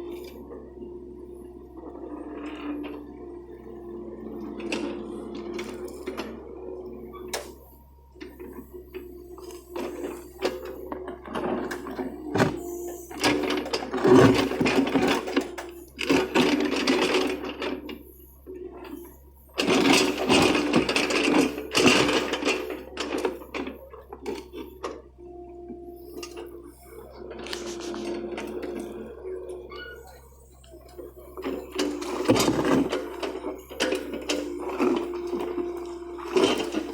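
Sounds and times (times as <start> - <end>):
excavator engine humming: 0.0 - 36.9
clattering and knocking: 12.3 - 15.4.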